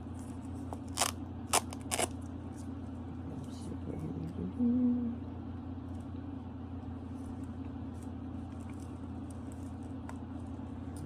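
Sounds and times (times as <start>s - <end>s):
low room hum: 0.0s - 11.0s.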